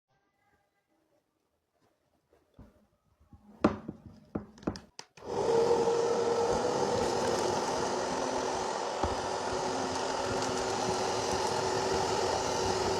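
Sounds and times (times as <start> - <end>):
vacuum cleaner running: 5.2 - 12.9.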